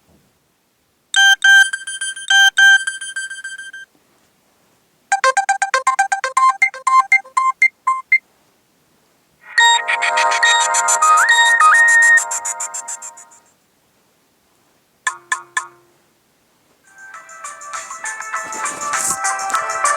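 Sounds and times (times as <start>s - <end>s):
electronic ringtone and alert tones: 1.2s - 3.8s, 5.1s - 8.2s, 9.5s - 13.4s
polyphonic ringtone tune with chords: 1.2s - 3.9s, 5.1s - 8.2s, 9.5s - 13.4s, 15.1s - 15.9s.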